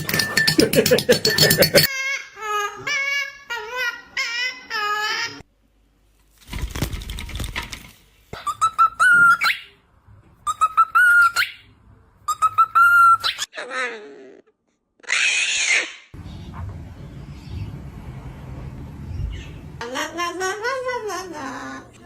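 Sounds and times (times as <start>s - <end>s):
parrot squawk: 15.0s - 16.5s.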